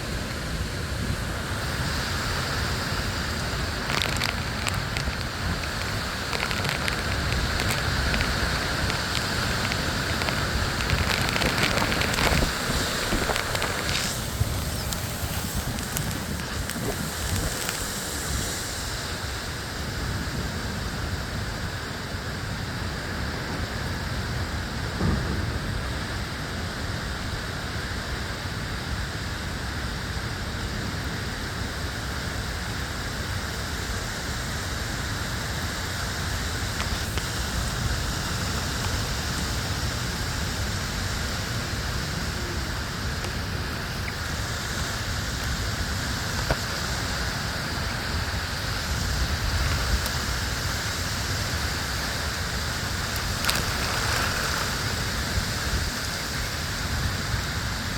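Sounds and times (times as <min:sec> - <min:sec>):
steady rain: 0:00.0 - 0:57.9
low thunder rumbling: 0:24.8 - 0:27.3.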